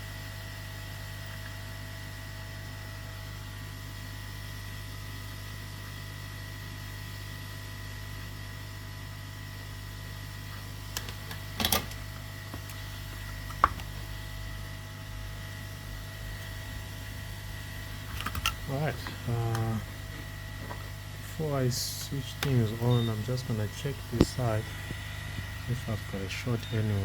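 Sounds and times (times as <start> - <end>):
electrical hum: 0.0 - 27.0
faint high whine: 16.2 - 27.0
clicks: 21.9 - 25.6.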